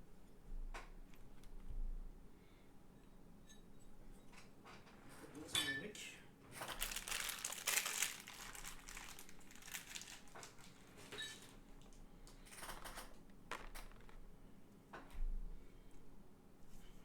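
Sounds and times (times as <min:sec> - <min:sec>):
packaging rustling and crinkling: 0:06.6 - 0:14.2.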